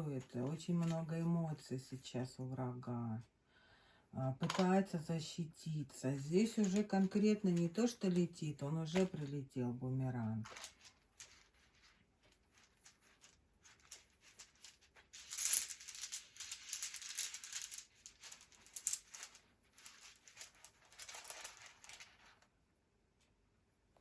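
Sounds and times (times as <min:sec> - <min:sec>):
runes rattling and clattering: 0:10.4 - 0:22.5.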